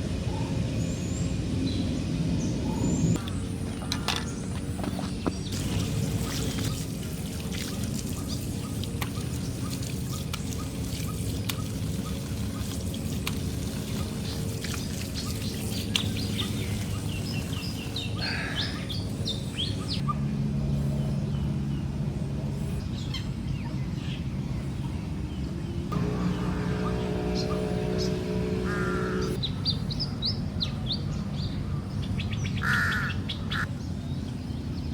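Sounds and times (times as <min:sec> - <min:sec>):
small birds chirping: 0:00.5 - 0:20.1, 0:22.5 - 0:34.9
steady low hum: 0:00.8 - 0:23.4, 0:25.9 - 0:29.4.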